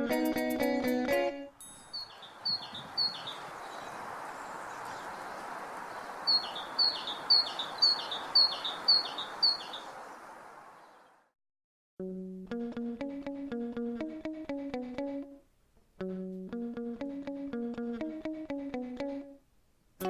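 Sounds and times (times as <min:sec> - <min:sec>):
outdoor background hiss: 0:00.0 - 0:11.3, 0:12.1 - 0:20.0
great tit singing: 0:01.6 - 0:10.0.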